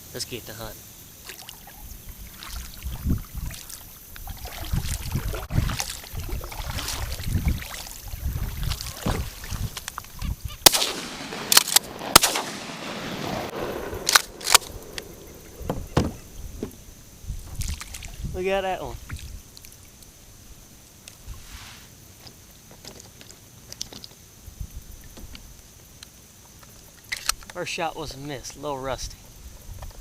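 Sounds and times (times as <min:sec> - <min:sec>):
water sloshing: 0:01.2 - 0:10.2
kayak hull knocks: 0:08.7 - 0:09.6, 0:15.6 - 0:16.8
sharp clicks: 0:14.0 - 0:15.1.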